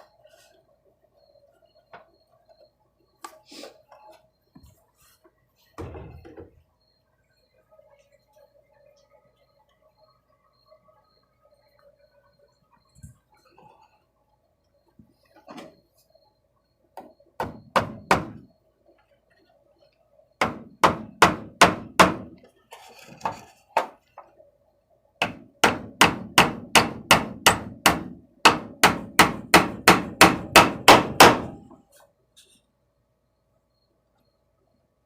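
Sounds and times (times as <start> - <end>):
hammer striking metal: 25.2 - 31.6.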